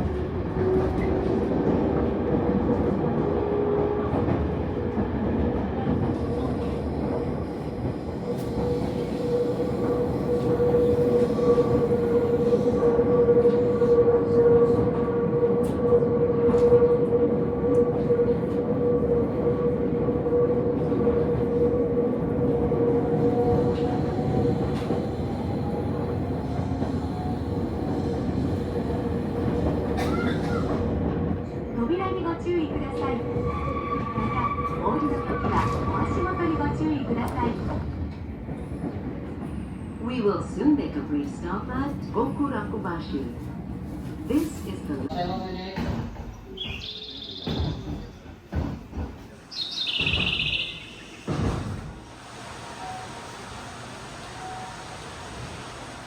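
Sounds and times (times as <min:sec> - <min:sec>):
train wheels rumbling: 0:00.0 - 0:56.0.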